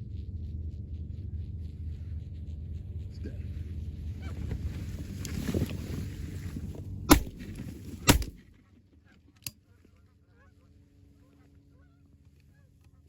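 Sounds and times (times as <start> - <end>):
shotgun shots: 7.1 - 8.5.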